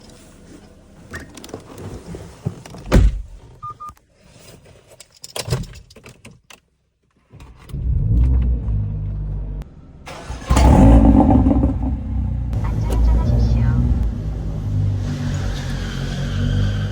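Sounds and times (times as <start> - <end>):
car engine starting: 7.6 - 16.9.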